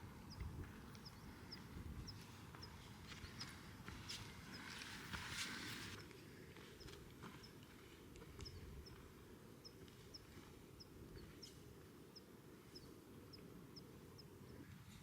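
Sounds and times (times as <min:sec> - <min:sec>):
bird chirping: 0:00.2 - 0:04.8.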